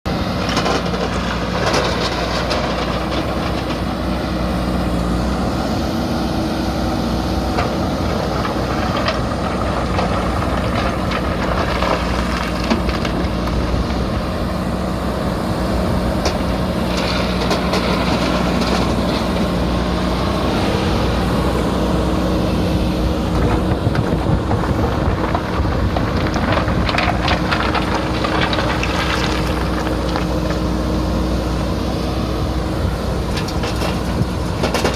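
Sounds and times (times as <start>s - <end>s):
diesel engine running: 0.0s - 34.9s
stone and gravel clattering: 0.4s - 4.3s, 7.6s - 14.4s, 16.2s - 19.7s, 23.2s - 31.7s, 33.2s - 34.9s.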